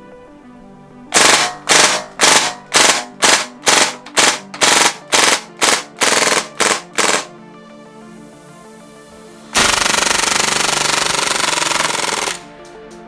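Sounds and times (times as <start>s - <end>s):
airsoft gun shots: 1.2s - 7.3s, 9.6s - 12.6s.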